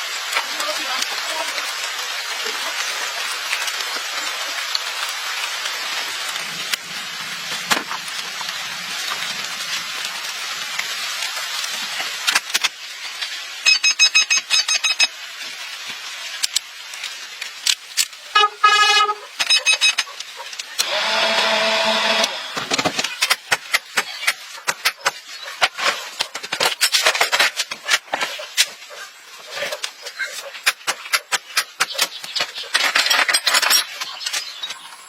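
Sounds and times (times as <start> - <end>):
short high electronic beeps: 13.7 - 15.1, 18.4 - 20.0
steady hiss: 15.0 - 19.5.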